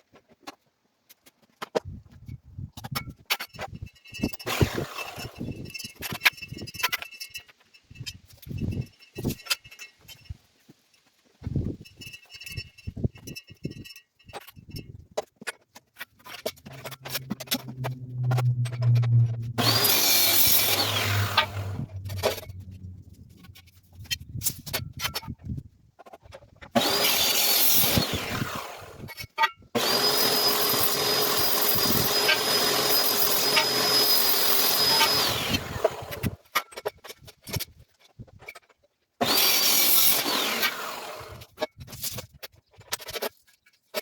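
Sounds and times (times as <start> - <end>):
power tool cutting whine: 16.6 - 23.8, 26.8 - 29.2, 29.8 - 36.4, 39.2 - 41.5.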